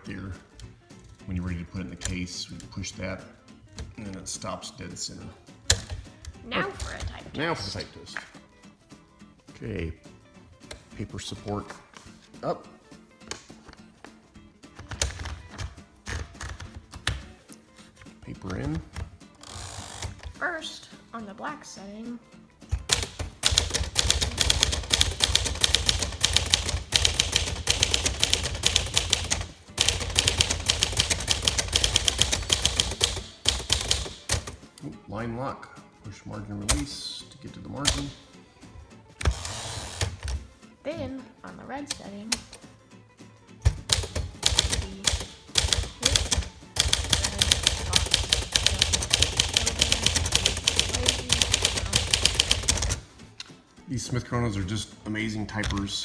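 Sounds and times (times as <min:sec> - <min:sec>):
manual typewriter typing: 0:14.8 - 0:17.2, 0:22.8 - 0:34.6, 0:37.8 - 0:38.2, 0:43.7 - 0:53.1.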